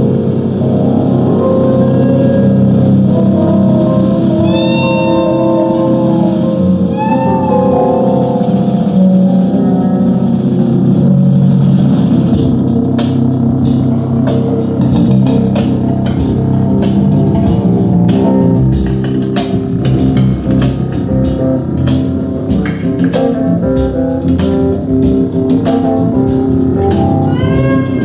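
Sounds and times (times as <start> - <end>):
rock music: 0.0 - 28.0
drum kit steady beat: 11.8 - 28.0.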